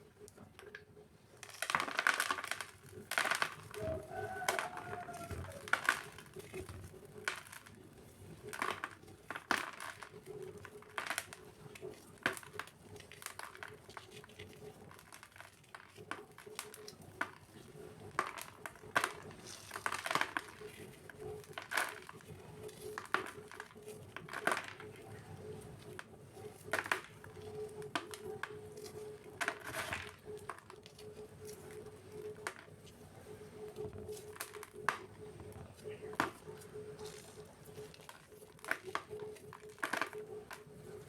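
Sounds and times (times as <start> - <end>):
cement cubes crunching: 1.4 - 33.0, 33.6 - 41.0
faint steady hum: 15.6 - 41.0.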